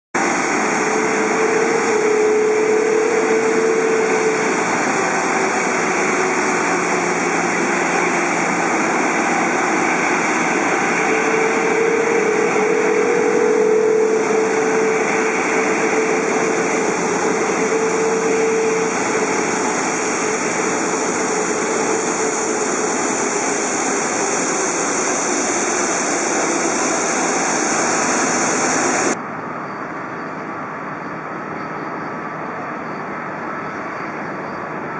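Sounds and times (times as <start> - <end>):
jet engines running: 0.2 - 29.2.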